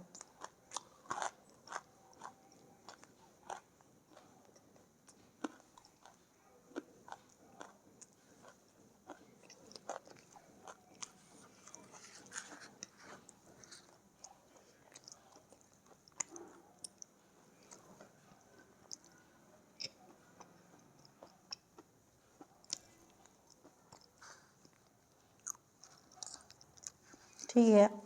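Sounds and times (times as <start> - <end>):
crisp chewing crunches: 22.4 - 27.5.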